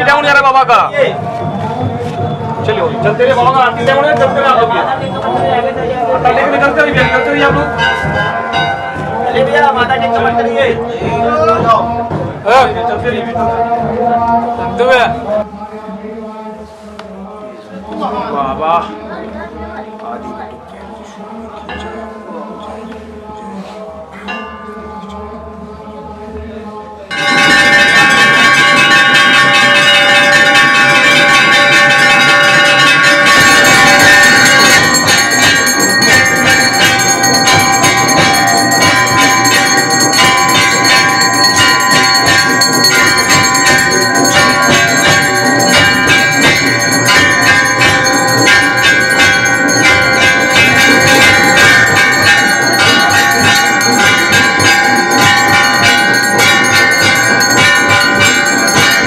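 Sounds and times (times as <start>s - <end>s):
temple bells clanging: 3.2s - 12.7s, 27.1s - 59.0s.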